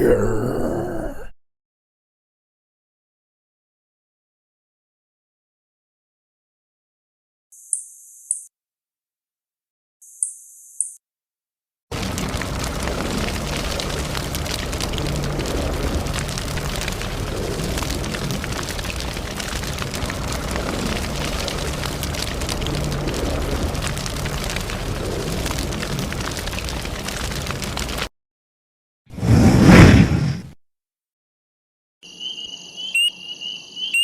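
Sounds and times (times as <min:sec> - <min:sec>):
dense crackling rumble: 0:11.9 - 0:28.1, 0:29.2 - 0:30.6.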